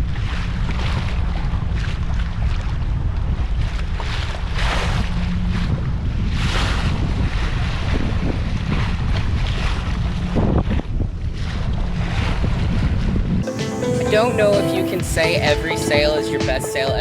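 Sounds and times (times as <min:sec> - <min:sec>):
wind buffeting microphone: 0:04.9 - 0:13.4.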